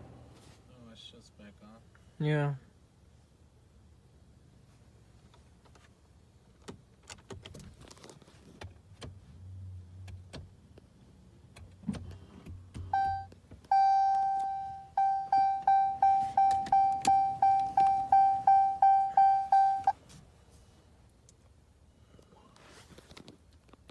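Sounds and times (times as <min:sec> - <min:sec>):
dashboard warning chimes: 0:12.9 - 0:20.0.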